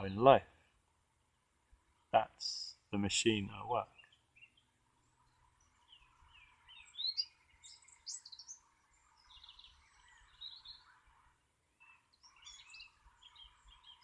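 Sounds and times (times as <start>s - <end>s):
faint background noise: 0.0s - 14.0s
birds chirping and whistling: 5.3s - 14.0s.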